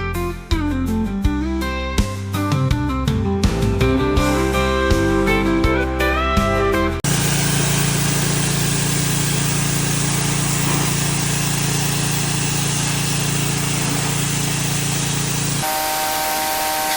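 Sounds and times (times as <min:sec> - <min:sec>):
pressure washer engine hum: 0:07.0 - 0:16.9
high-pressure water spray hiss: 0:07.1 - 0:16.9.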